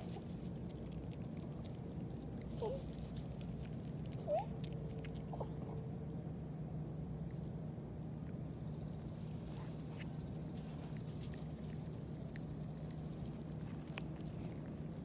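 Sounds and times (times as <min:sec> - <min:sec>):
steady low hum: 0:00.0 - 0:15.0
animal squeaky whines: 0:04.2 - 0:04.5.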